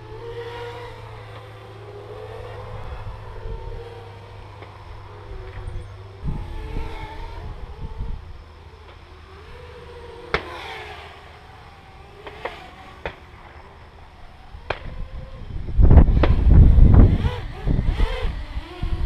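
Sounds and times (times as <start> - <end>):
wind buffeting microphone: 0.0 - 8.6, 14.1 - 19.0
quadcopter propellers buzzing: 0.0 - 19.0.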